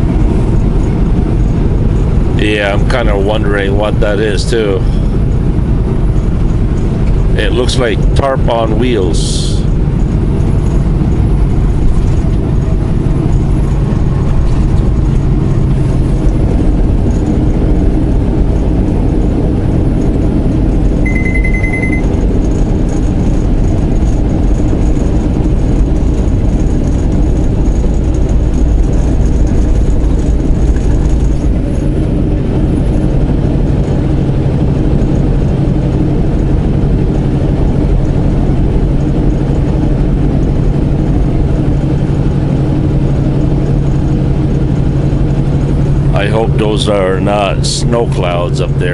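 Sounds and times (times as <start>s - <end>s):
diesel engine drone: 0.0s - 48.9s
road noise: 0.0s - 48.9s
short high beep: 21.1s - 22.1s.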